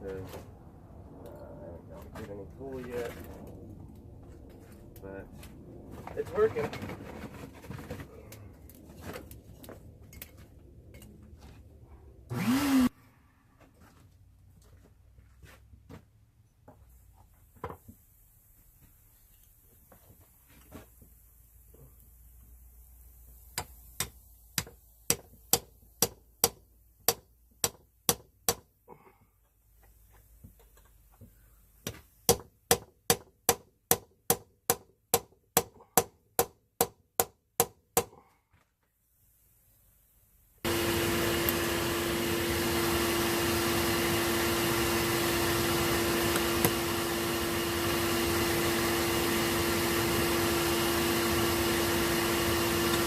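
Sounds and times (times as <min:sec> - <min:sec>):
forge air blower humming: 0:12.3 - 0:12.9, 0:40.7 - 0:53.0.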